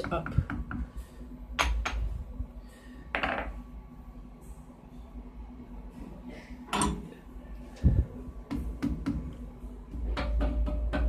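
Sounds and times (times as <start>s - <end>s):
faint machine hum: 0.0s - 11.0s.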